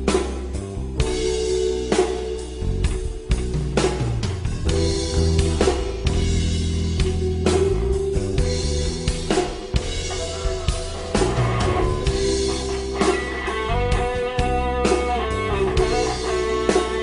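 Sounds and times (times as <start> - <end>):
rock backing track: 0.0 - 17.0
electric guitar solo: 10.0 - 17.0.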